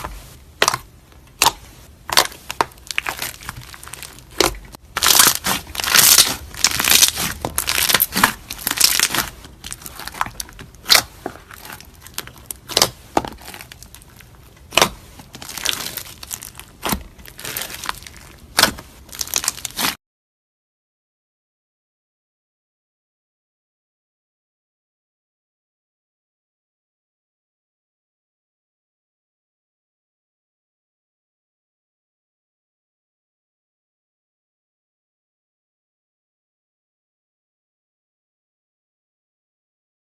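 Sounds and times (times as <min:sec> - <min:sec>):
slime being squeezed: 0:01.4 - 0:20.0
sharp pops and crinkly crackling: 0:02.2 - 0:20.0.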